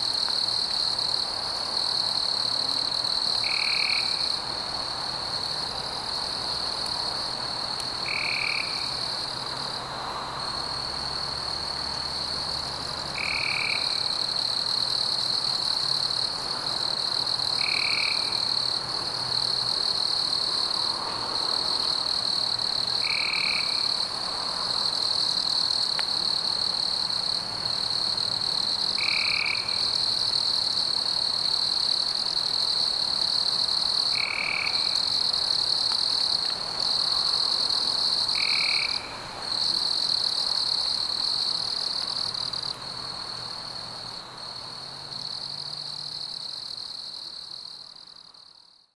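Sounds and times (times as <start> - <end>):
frogs croaking: 8.0 - 9.0, 13.2 - 14.4, 22.9 - 24.0, 34.0 - 35.6, 36.8 - 42.6.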